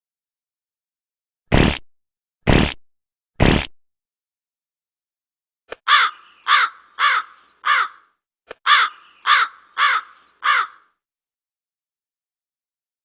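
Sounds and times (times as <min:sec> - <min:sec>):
crow cawing: 0:05.9 - 0:11.0.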